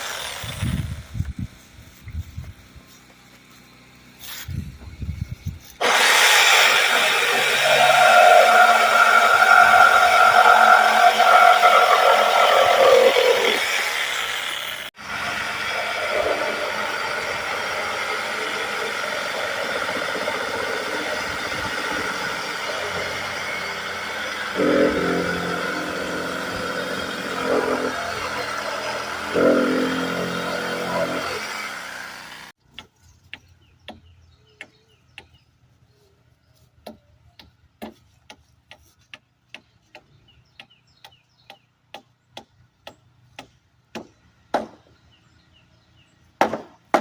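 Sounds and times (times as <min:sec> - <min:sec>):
generator engine running: 0:05.8 - 0:32.5.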